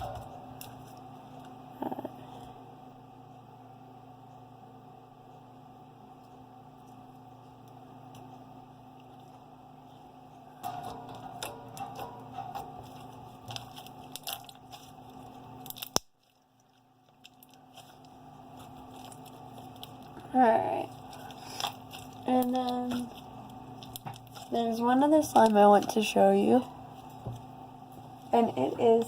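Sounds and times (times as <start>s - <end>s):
faint steady hum: 0.0s - 29.0s
slime squishing: 11.2s - 29.0s.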